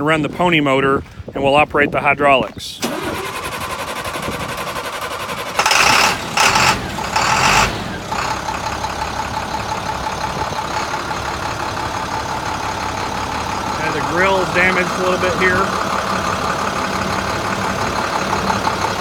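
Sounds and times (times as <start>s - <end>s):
diesel engine starting and idling: 2.6s - 19.0s
starter motor cranking: 2.8s - 8.6s.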